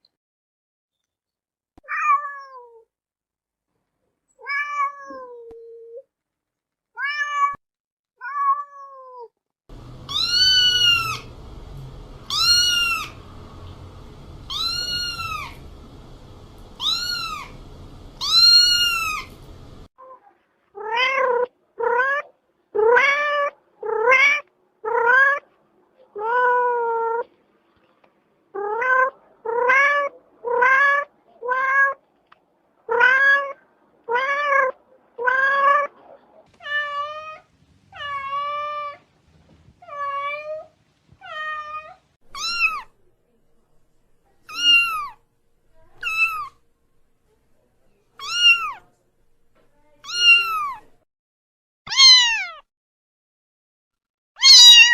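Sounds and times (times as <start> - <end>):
cats meowing: 10.0 - 19.9, 20.8 - 25.4, 28.6 - 32.0, 32.9 - 39.0, 39.8 - 43.0, 44.5 - 45.2, 46.0 - 46.6, 48.2 - 48.9, 50.0 - 51.0, 51.9 - 52.6, 54.4 - 54.9.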